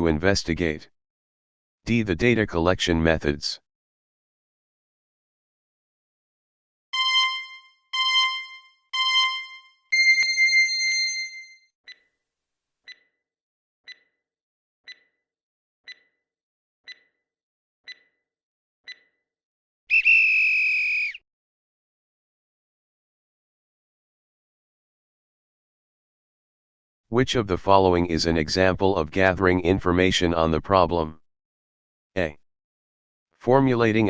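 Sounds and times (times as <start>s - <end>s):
alarm tone: 7.0s - 11.6s
short electronic beeps: 7.0s - 12.0s
soft ticks: 13.9s - 14.1s, 15.9s - 16.1s, 16.9s - 17.1s, 17.9s - 18.1s.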